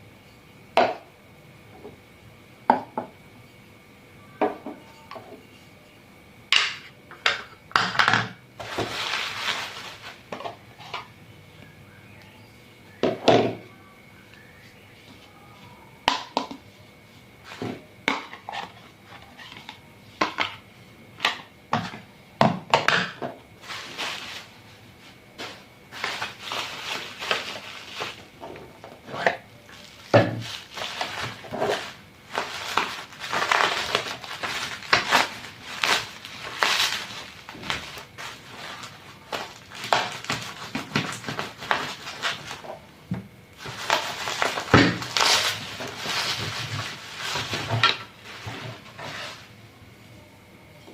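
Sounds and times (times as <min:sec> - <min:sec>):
scraping and rustling: 0:08.6 - 0:11.1, 0:23.4 - 0:42.9, 0:43.6 - 0:49.6.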